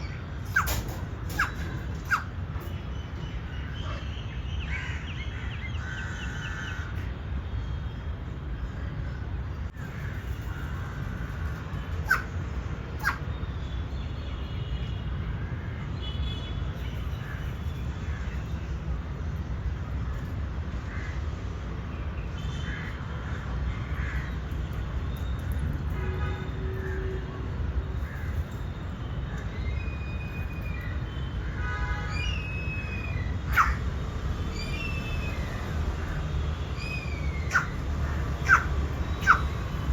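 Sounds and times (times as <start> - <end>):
short bird calls: 32.1 - 33.8, 36.8 - 39.9.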